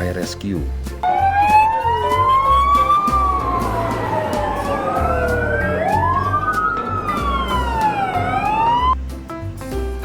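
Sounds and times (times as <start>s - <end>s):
steady low beat: 0.7s - 9.0s
siren wailing: 1.0s - 9.0s.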